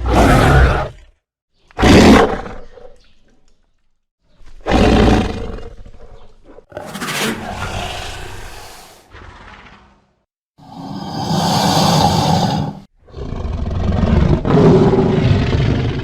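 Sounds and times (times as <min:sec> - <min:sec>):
loud animal-like roars: 0:06.7 - 0:16.0.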